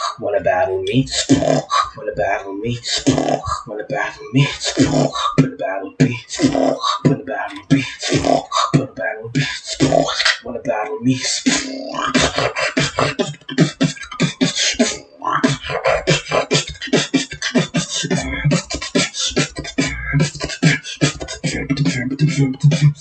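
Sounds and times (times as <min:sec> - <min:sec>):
beatboxing drum hits: 0:00.0 - 0:10.2.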